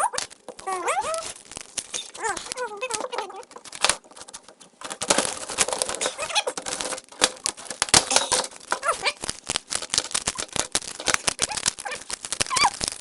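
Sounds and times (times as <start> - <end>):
plastic and metal parts breaking: 0.0 - 13.0.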